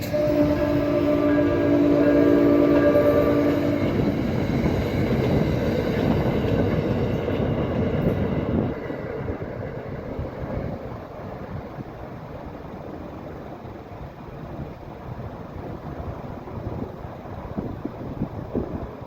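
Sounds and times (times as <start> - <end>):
train horn chord: 0.0 - 4.4
rumble of passing train: 0.0 - 19.0.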